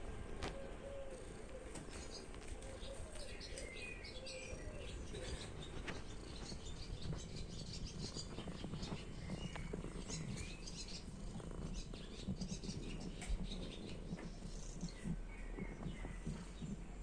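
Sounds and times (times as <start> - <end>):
kitten purring: 4.6 - 17.0.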